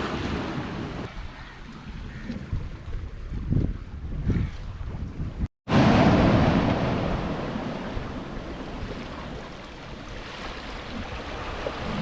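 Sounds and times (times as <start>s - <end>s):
wind on microphone: 0.0s - 12.0s
sea waves against rocks: 5.7s - 12.0s.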